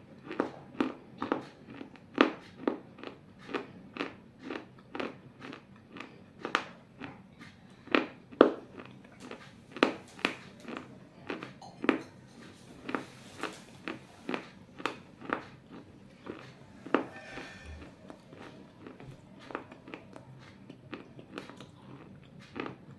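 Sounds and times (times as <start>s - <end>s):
chewing crisp crunches: 0.2s - 22.9s.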